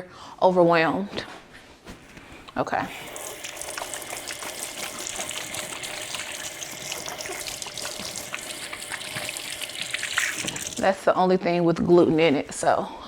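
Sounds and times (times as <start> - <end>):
tap water splashing into sink: 2.9 - 10.9.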